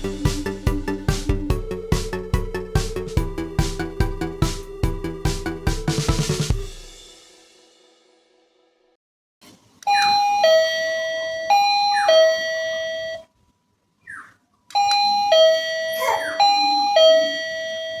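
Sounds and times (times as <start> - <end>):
faint chirp: 9.9 - 13.0
doorbell two-tone chime: 14.8 - 18.0.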